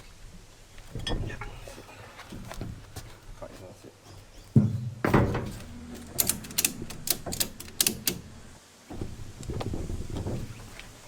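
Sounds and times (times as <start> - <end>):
heavy thump: 4.6 - 5.8.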